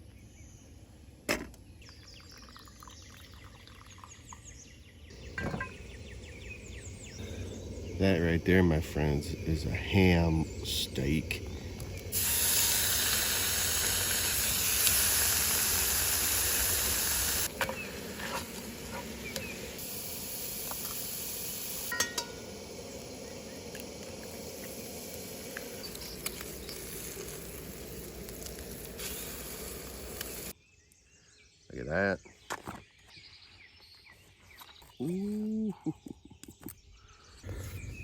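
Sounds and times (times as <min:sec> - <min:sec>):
ham sizzling in a frying pan: 0:11.7 - 0:30.5.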